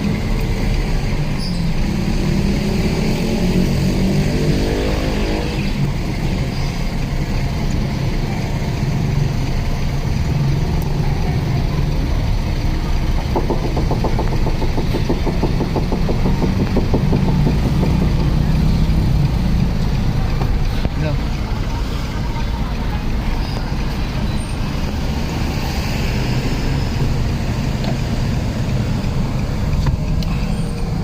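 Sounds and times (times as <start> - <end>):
car engine humming: 0.0 - 31.0
fast even ticking: 13.0 - 19.6.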